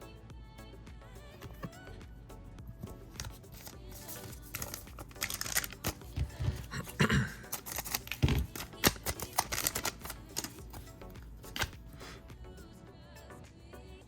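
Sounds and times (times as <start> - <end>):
quiet background music: 0.0 - 14.0
trading cards being handled: 2.7 - 12.2
foil wrapper crinkling: 3.2 - 10.9.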